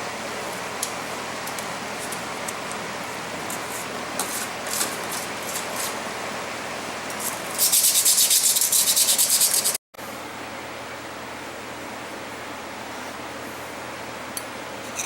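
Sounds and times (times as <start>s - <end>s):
sanding strokes on metal: 7.2s - 9.8s.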